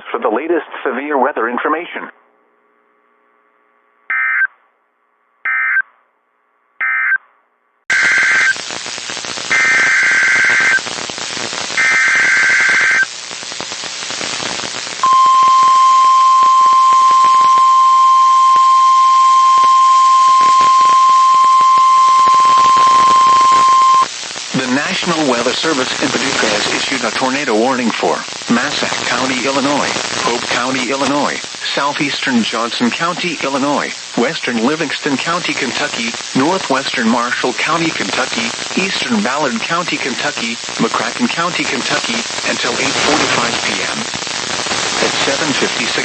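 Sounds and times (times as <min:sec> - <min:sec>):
radio static hiss: 0:00.0 - 0:02.2, 0:07.9 - 0:46.0
digital data bursts: 0:07.9 - 0:13.2, 0:14.0 - 0:27.0
steady warning alarm tone: 0:15.0 - 0:24.1
warbling data bursts: 0:15.0 - 0:24.1.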